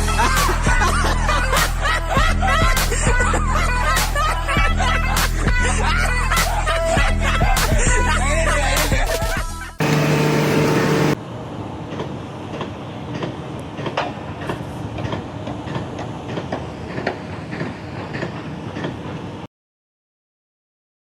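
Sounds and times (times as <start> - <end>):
machinery noise: 9.8 - 11.2.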